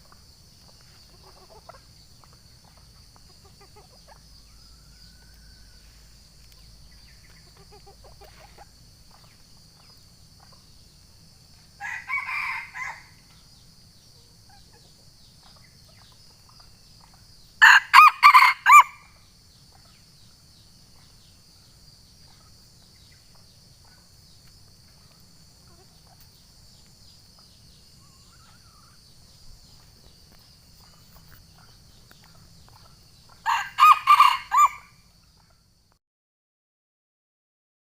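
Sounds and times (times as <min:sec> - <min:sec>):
rooster crowing: 0:11.8 - 0:13.2, 0:17.6 - 0:19.1, 0:33.4 - 0:35.0.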